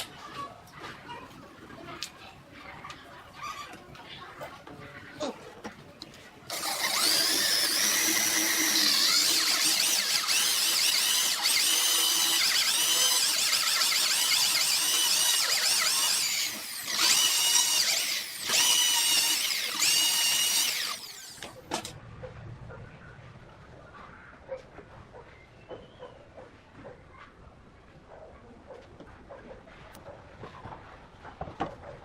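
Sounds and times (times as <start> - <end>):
power tool motor whining: 6.5 - 21.9.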